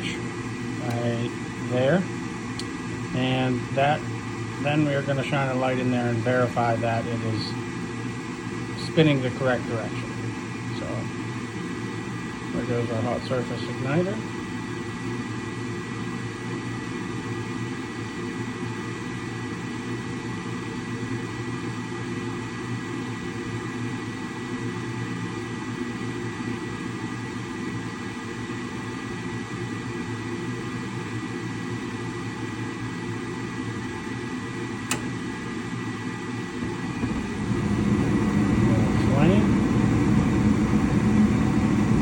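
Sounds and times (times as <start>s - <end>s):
furnace blower humming: 0.0s - 42.0s
sharp click: 34.9s - 35.1s.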